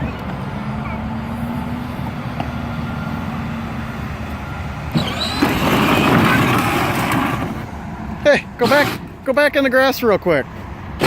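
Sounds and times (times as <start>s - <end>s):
rough rushing noise: 4.9s - 7.7s.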